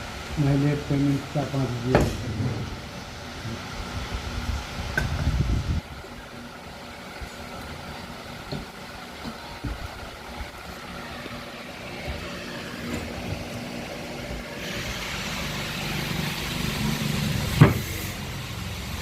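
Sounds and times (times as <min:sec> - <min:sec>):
motor hum: 0:00.0 - 0:19.0.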